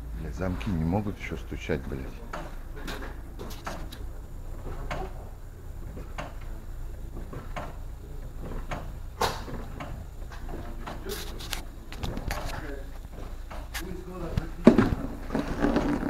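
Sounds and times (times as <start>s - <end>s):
steady low hum: 0.0s - 16.0s
metallic clunks from truck cab: 8.4s - 11.0s.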